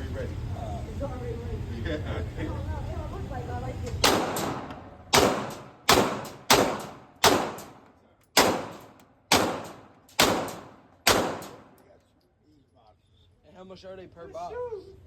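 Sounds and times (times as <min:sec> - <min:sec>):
gunshots with echo: 0:04.0 - 0:07.8, 0:08.4 - 0:11.8.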